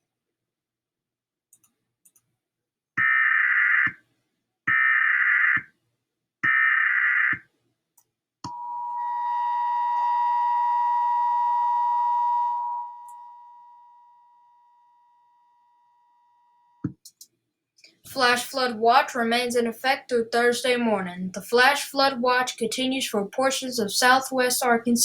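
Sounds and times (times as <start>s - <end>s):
steady attention tone: 8.5s - 16.8s.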